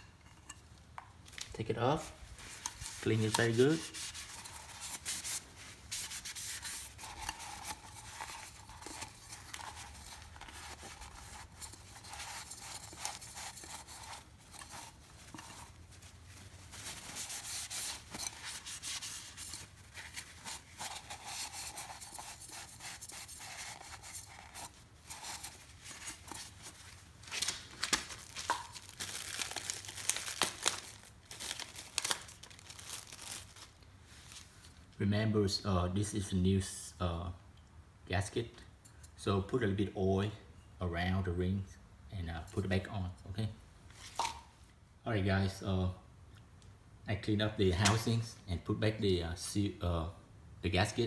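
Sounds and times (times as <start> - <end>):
rubbing and wiping plastic: 1.3 - 34.9.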